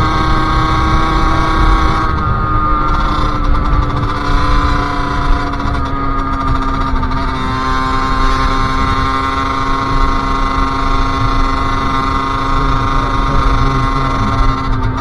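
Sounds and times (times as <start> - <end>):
two-stroke engine running: 0.0 - 15.0.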